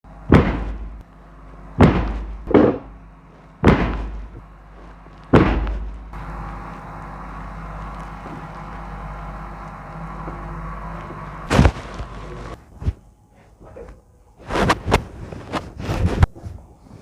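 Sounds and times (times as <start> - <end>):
steady low hum: 0.0 - 17.0
loud sudden thumps: 0.3 - 1.0, 1.8 - 3.0, 3.6 - 4.4, 5.3 - 6.2, 11.4 - 12.2.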